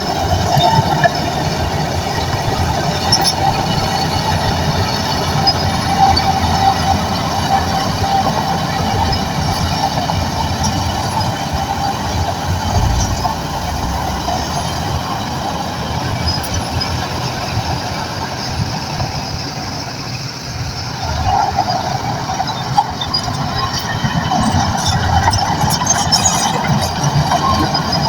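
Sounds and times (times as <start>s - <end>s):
tracks squealing: 0.0s - 19.5s
bulldozer diesel engine rumbling: 0.0s - 28.0s.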